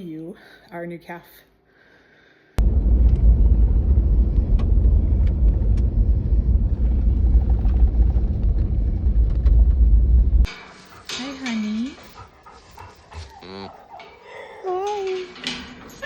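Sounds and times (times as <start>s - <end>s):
low rumble: 2.6s - 10.6s.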